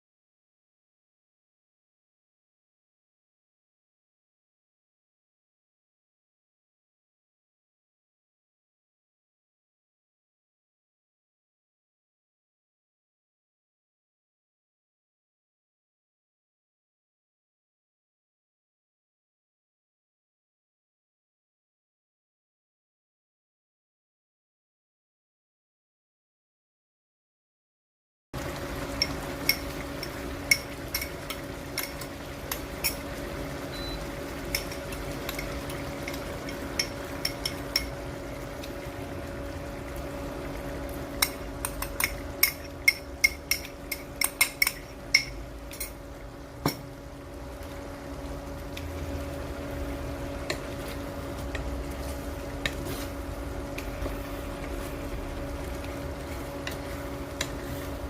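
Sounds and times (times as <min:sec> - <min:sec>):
steady hum: 0:28.4 - 0:58.0
utensil clinking and scraping pot: 0:28.9 - 0:33.2, 0:34.4 - 0:38.0, 0:41.2 - 0:46.0.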